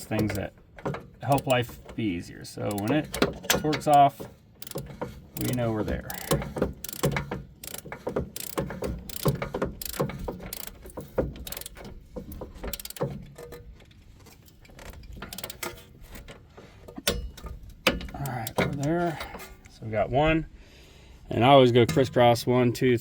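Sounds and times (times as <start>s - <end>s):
torque wrench ratcheting clicks: 1.2s - 1.8s, 2.6s - 13.1s, 14.5s - 15.8s
sharp wrench click: 4.6s - 4.8s, 5.4s - 10.8s, 11.5s - 11.8s.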